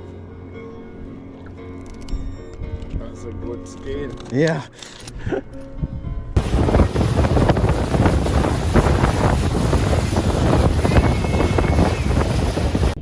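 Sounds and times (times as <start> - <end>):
wind buffeting microphone: 5.8 - 13.0.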